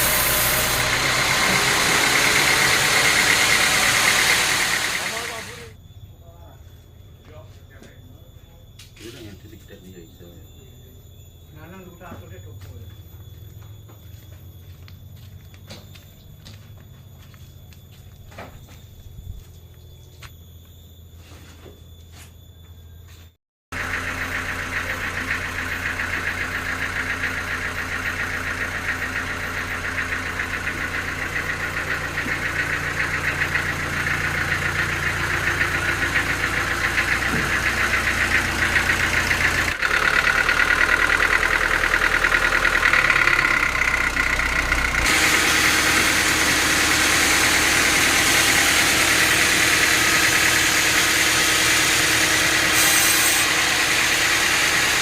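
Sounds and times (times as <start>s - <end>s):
sawmill machinery running: 0.0s - 5.8s, 23.8s - 55.0s.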